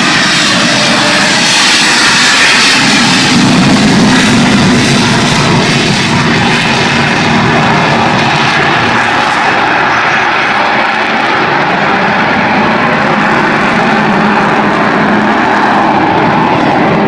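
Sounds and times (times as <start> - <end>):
jet engines roaring: 0.0 - 17.0.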